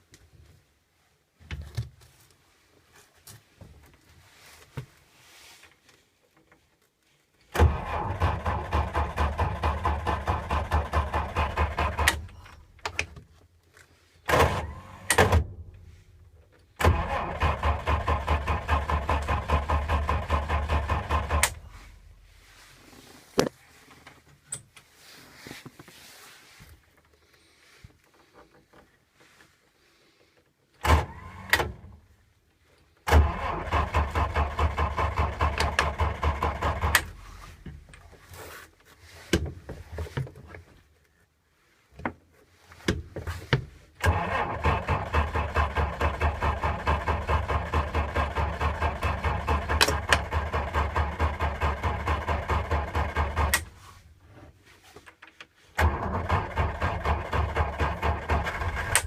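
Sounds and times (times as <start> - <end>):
starter cranking engine: 7.6 - 12.4, 16.8 - 21.8, 33.1 - 37.4, 44.0 - 53.7, 55.8 - 59.0.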